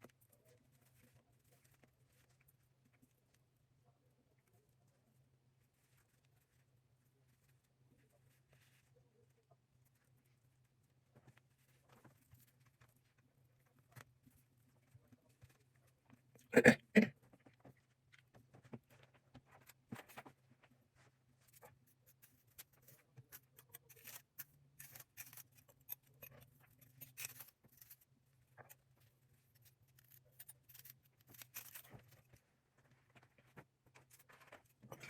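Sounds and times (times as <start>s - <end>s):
handling clicks and rustles: 17.3s - 35.0s.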